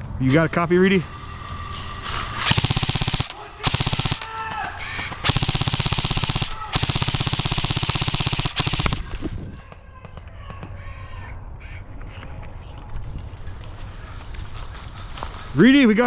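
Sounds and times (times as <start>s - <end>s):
airsoft guns firing full auto: 2.4s - 9.3s.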